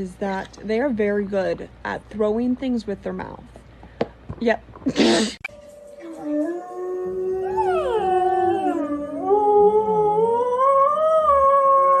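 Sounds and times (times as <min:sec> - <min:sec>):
dog howling: 0:05.6 - 0:12.0.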